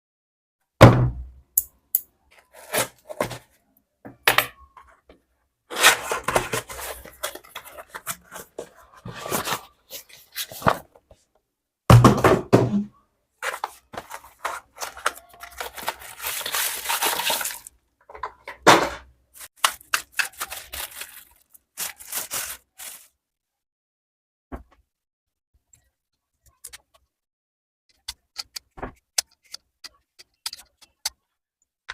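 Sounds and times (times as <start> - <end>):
packaging rustling and tearing: 5.7 - 10.7, 13.4 - 17.7, 19.4 - 23.2.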